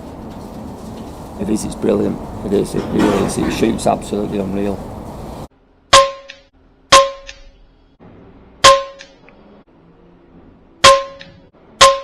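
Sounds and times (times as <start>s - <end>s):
metallic clangs ringing: 5.9s - 7.6s, 10.8s - 12.0s.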